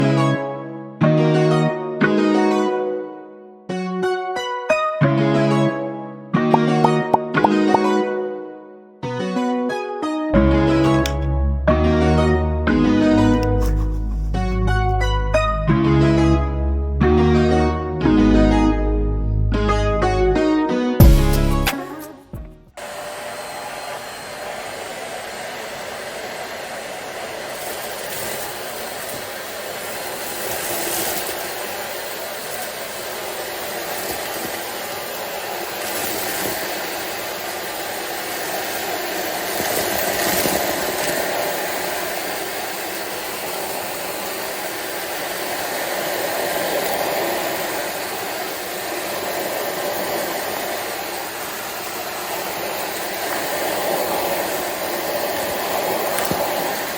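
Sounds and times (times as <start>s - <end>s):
vacuum cleaner motor whirring: 22.8s - 56.9s.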